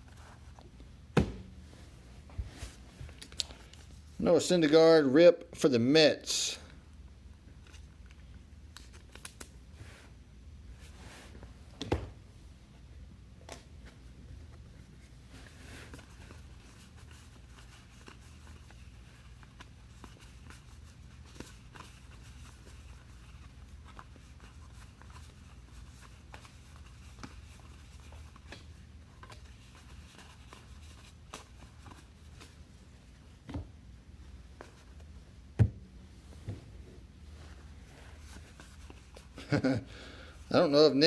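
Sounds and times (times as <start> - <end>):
cards clicking and rustling: 7.6 - 9.5.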